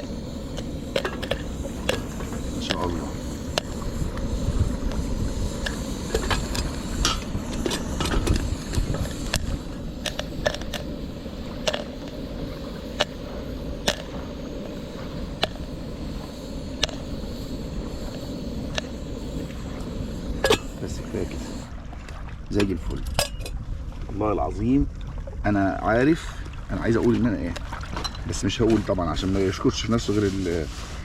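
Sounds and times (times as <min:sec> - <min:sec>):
popcorn popping in metal pot: 0:00.0 - 0:21.7.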